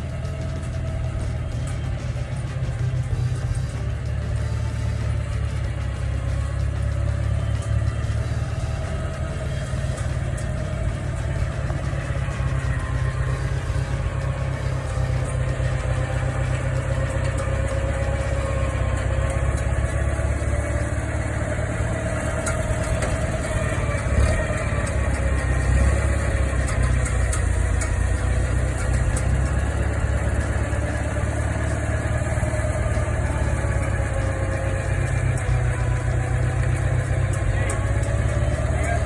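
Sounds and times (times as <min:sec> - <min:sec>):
vehicle engine rumbling: 0:00.0 - 0:39.0.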